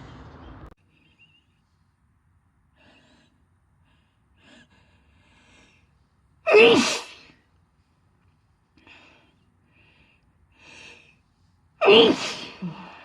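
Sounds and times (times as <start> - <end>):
person sneezing loudly: 6.5 - 7.2, 11.8 - 13.0
person gasping breaths: 12.4 - 13.0.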